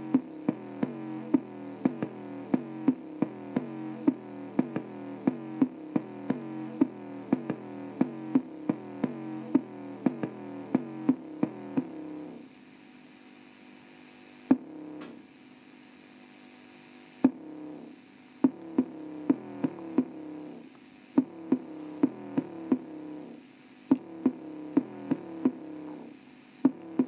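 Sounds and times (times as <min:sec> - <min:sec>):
synth tone with drum-like hits: 0:00.0 - 0:12.0, 0:17.2 - 0:17.5, 0:18.4 - 0:20.2, 0:23.9 - 0:25.7.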